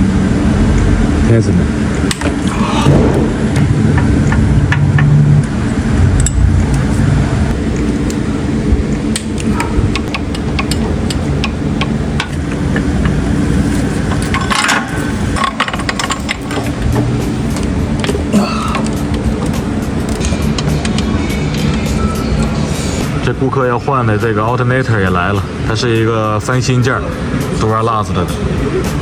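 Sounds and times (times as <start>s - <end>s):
car engine humming: 0.0s - 29.0s
hand tools clinking and rattling: 9.4s - 22.5s.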